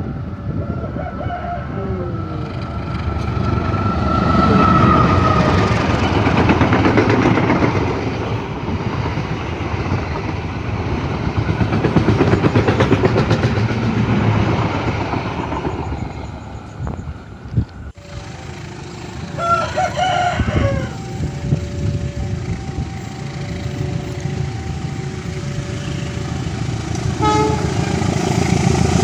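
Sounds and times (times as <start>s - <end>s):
diesel train passing at speed: 0.0s - 29.0s
wheels clattering over rail joints: 2.4s - 19.6s.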